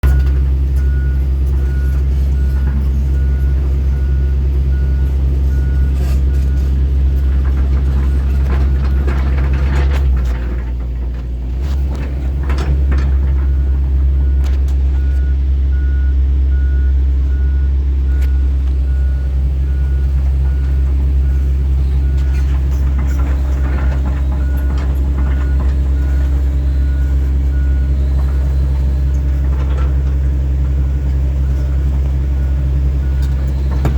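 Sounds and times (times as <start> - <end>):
excavator diesel engine running: 0.0 - 33.9
travel alarm beeping: 32.4 - 33.9.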